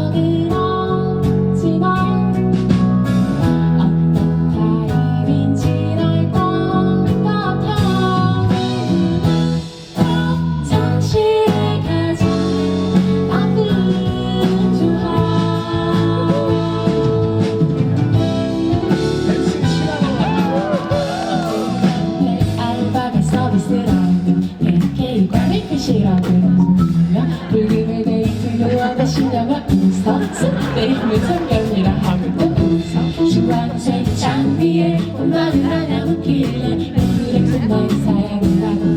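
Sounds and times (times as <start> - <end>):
person singing: 0.0 - 2.7, 3.4 - 38.9
live pop band with guitar: 0.0 - 38.9.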